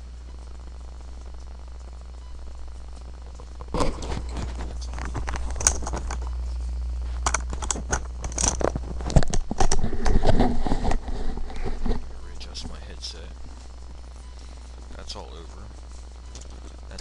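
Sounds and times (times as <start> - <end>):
low electrical hum: 0.0 - 17.0
microphone handling rustles and knocks: 3.6 - 12.8.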